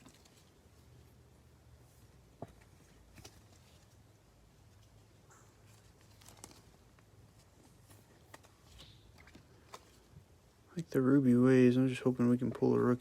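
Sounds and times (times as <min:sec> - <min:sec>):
trading cards handled: 0:02.4 - 0:04.0, 0:05.6 - 0:10.2.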